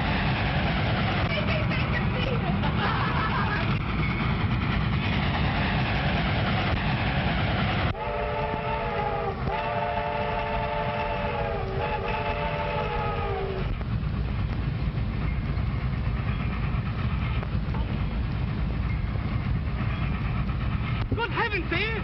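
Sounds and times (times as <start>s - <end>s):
train rumbling: 0.0s - 22.0s
train chord whistle blasts: 7.9s - 13.7s.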